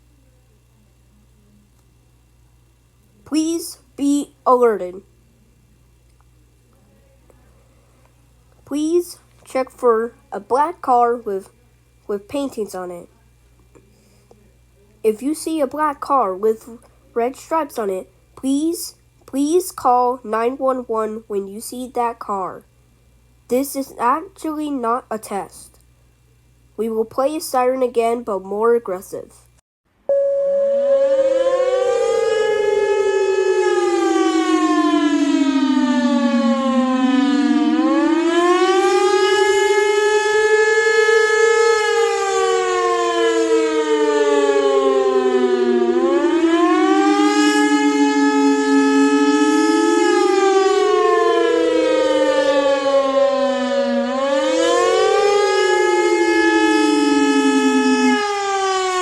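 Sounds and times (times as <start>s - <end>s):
warning siren wailing: 30.1s - 59.0s.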